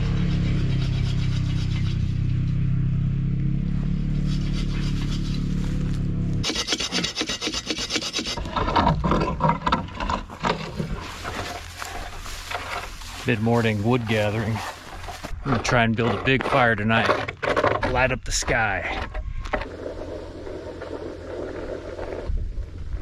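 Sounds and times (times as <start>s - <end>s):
hand saw cutting wood: 0.0s - 2.2s, 4.2s - 18.2s
low engine drone: 0.0s - 23.0s.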